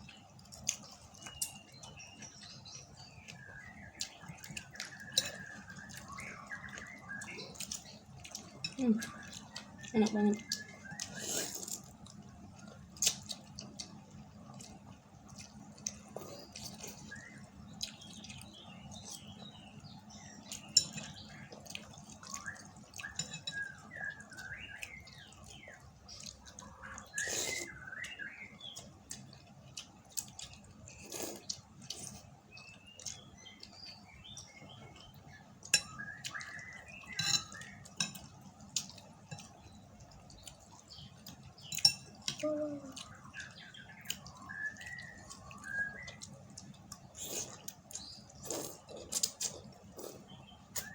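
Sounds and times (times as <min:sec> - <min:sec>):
chewing: 0:00.0 - 0:50.9
slurping: 0:11.0 - 0:12.0, 0:27.2 - 0:27.8, 0:47.0 - 0:50.9.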